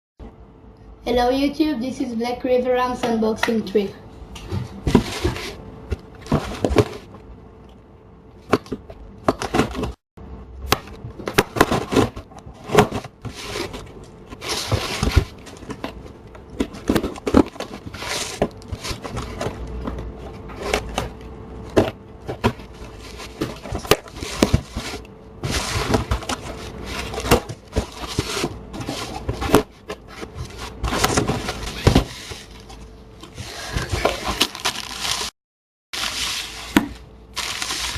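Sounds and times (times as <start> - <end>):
faint steady hum: 0.2 - 35.2
cardboard box crackling and rustling: 4.8 - 5.6, 6.2 - 7.1, 11.4 - 21.1, 21.7 - 32.8, 33.4 - 35.3, 36.0 - 37.9.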